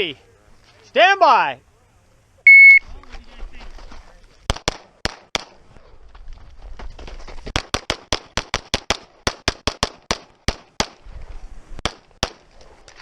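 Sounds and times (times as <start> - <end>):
pistol shots: 11.8 - 12.5.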